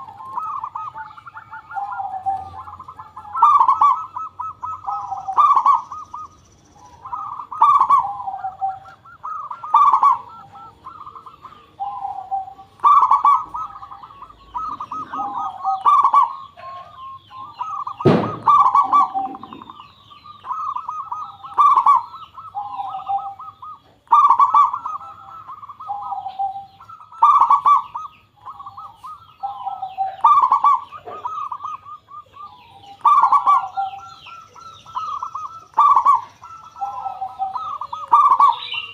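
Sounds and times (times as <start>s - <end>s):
dove cooing trilled phrases: 0.0s - 38.9s
sharp knock: 18.0s - 18.8s.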